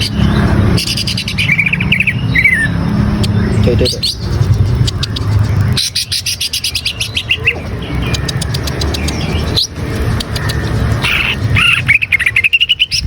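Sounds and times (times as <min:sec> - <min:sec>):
steady low hum: 0:00.0 - 0:12.5
bird singing varied song: 0:00.0 - 0:13.0.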